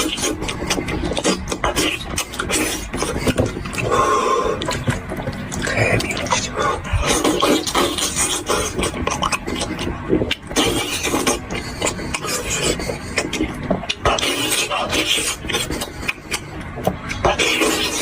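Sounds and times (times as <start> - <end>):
chewing and gnawing: 0.0 - 18.0.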